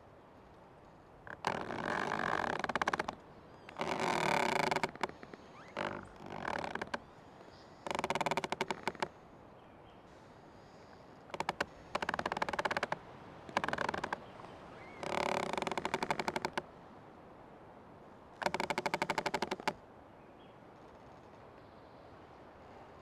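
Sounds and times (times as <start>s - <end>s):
tree creaking: 0.0s - 9.2s, 10.1s - 16.8s, 18.3s - 19.8s, 20.8s - 21.5s.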